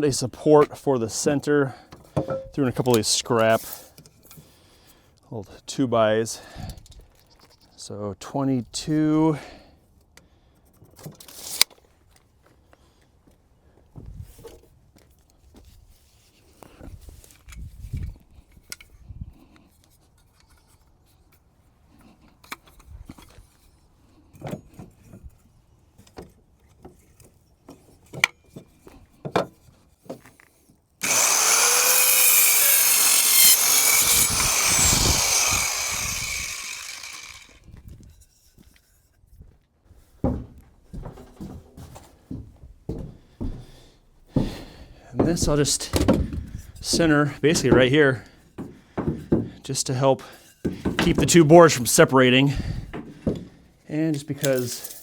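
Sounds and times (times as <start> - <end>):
power saw cutting wood: 31.0 - 37.7, 45.4 - 45.9.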